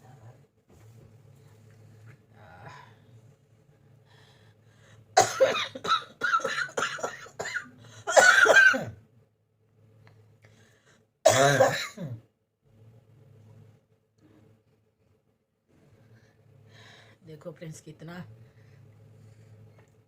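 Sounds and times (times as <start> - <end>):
person coughing: 5.2 - 9.0, 11.3 - 12.2.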